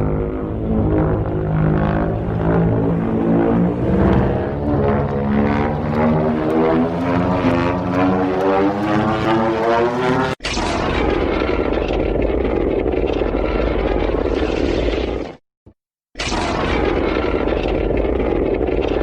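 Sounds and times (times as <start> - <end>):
deep pulsing monster call: 0.0 - 10.4.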